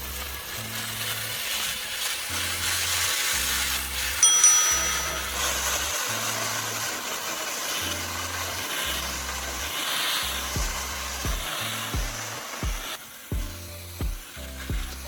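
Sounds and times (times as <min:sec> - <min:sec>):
steady hiss: 0:00.0 - 0:15.0
brief metallic ring: 0:04.2 - 0:05.5
music with low bass line: 0:04.8 - 0:06.8, 0:07.8 - 0:15.0.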